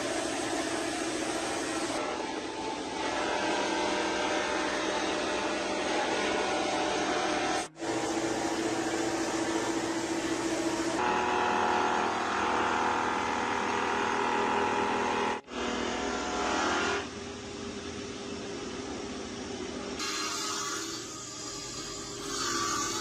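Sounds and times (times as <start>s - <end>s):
motor or power tool running: 3.0s - 17.1s.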